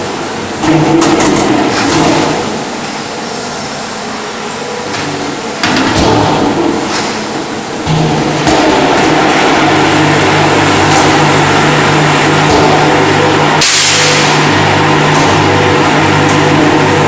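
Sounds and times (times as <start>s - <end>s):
hiss of spray: 13.6s - 14.3s.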